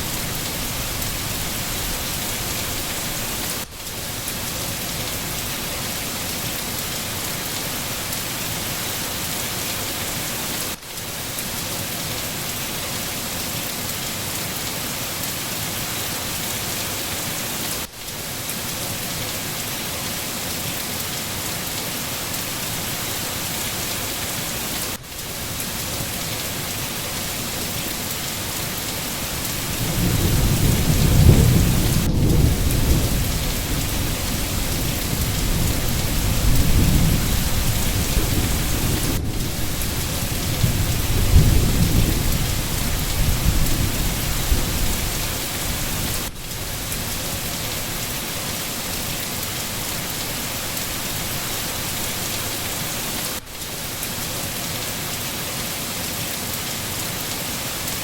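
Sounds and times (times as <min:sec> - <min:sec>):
steady rain hiss: 0:00.0 - 0:58.0
low rumble of thunder: 0:29.2 - 0:47.3.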